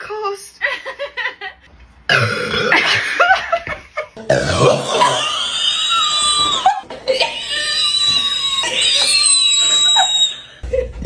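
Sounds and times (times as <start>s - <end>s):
person burping loudly: 2.1s - 3.2s, 4.2s - 7.9s.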